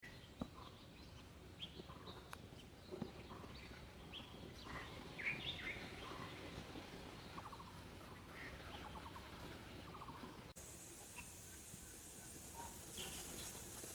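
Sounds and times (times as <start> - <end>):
birds chirping and calling: 0.0 - 6.6
faint outdoor background noise: 0.0 - 13.9.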